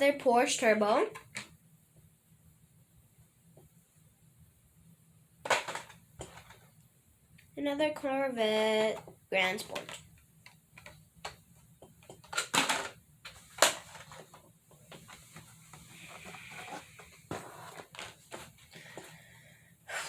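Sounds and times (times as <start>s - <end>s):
plastic blister packs clicking and rustling: 12.0s - 15.2s.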